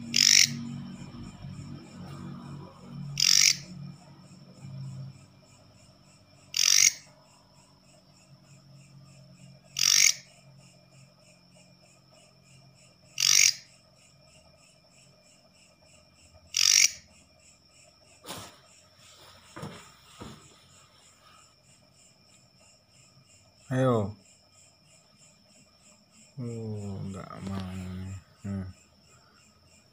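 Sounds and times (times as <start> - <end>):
katydid raspy calls: 0.0 - 0.9, 3.0 - 3.9, 6.4 - 7.2, 9.7 - 10.4, 13.1 - 13.8, 16.5 - 17.1
insects pulsing high-pitched: 0.0 - 29.9.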